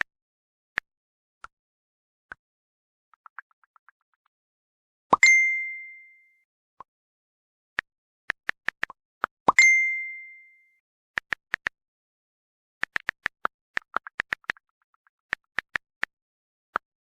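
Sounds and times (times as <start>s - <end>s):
notification ding: 5.2s - 6.2s, 9.5s - 10.5s.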